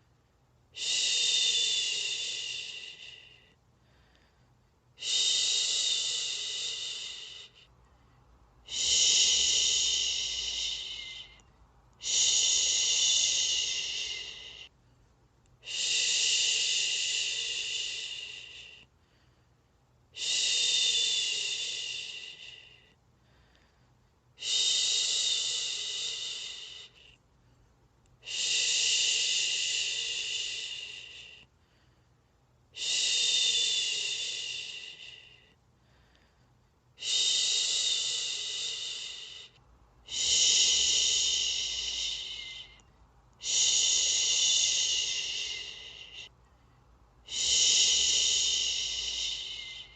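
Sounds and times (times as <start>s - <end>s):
person shushing: 8.7s - 11.4s, 12.0s - 14.7s, 40.1s - 42.8s, 43.4s - 46.3s, 47.3s - 49.9s.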